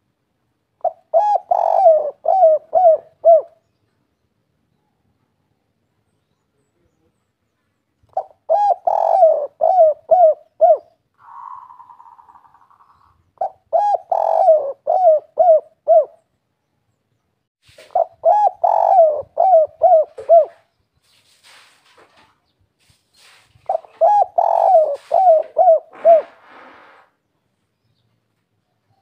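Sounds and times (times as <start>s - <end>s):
dove cooing rapid falling coos: 0.8s - 3.6s, 8.1s - 16.2s, 17.8s - 20.7s, 23.6s - 27.1s.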